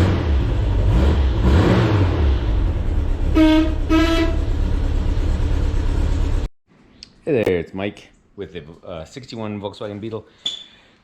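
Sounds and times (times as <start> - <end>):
low engine rumble: 2.4 - 6.5
vehicle horn toots: 3.3 - 4.6.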